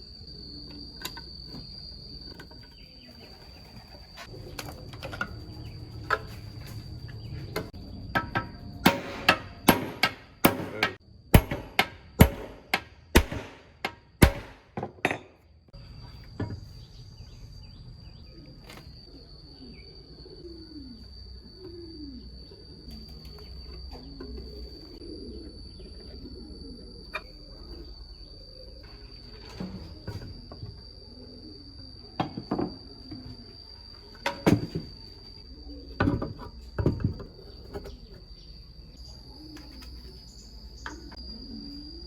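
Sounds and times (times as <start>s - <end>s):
hammer blows: 8.1s - 15.3s.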